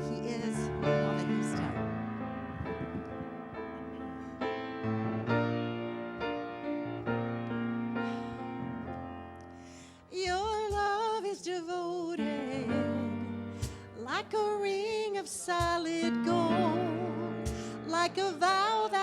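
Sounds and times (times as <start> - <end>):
sustained keyboard chords: 0.0 - 9.5
person singing: 10.2 - 19.0.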